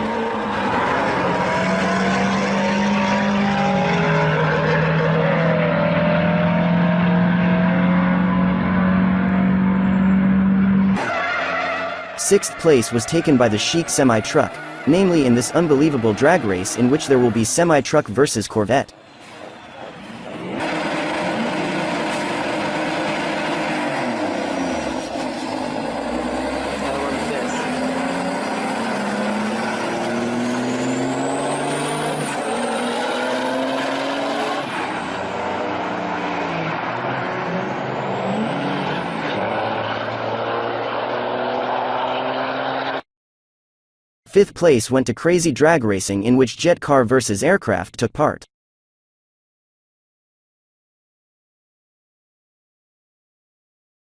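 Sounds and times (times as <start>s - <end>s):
deep engine hum: 0.0s - 11.0s
race car engines at full throttle: 0.0s - 43.0s.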